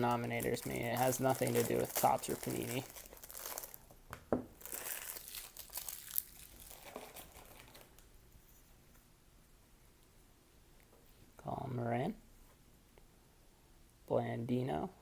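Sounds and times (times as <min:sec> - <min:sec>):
wrapper crinkling: 0:00.0 - 0:04.0, 0:04.6 - 0:08.0
card pack wrapper tearing: 0:00.1 - 0:03.9, 0:04.6 - 0:08.0.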